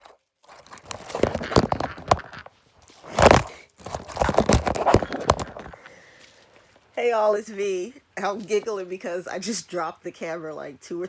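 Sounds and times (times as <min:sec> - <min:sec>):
rustling handling noise: 0:00.0 - 0:07.5.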